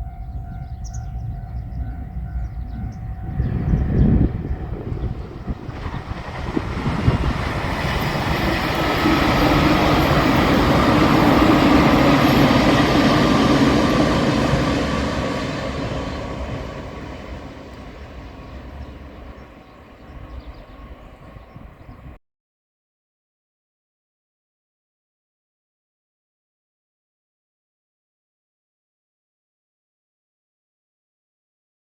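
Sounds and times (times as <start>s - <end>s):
electric train passing: 0.0s - 22.2s.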